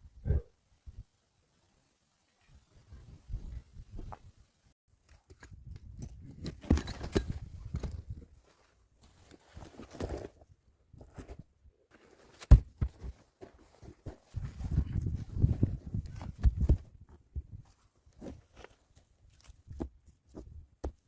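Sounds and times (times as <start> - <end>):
scraping and crunching handling: 5.2 - 21.0.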